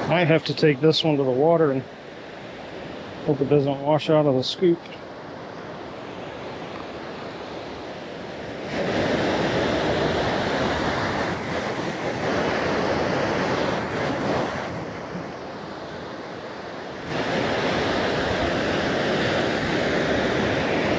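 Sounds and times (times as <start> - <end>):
ocean surf: 0.0 - 20.9
wind buffeting microphone: 5.3 - 20.9.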